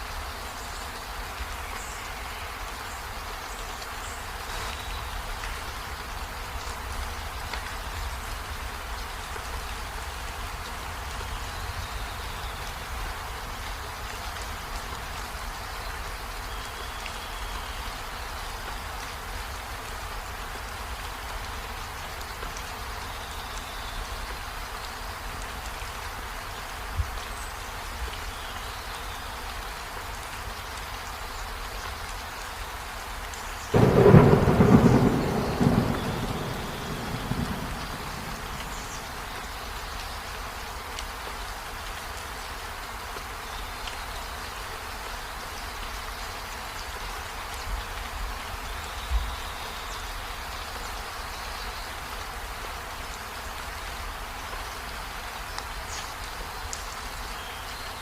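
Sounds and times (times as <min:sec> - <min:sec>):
steady rain: 0:00.0 - 0:58.0
thunderclap rumbling: 0:33.8 - 0:39.4.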